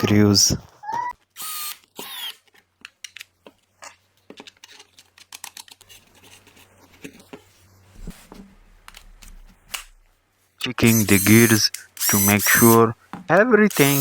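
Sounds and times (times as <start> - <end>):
faint low hum: 6.5 - 11.3.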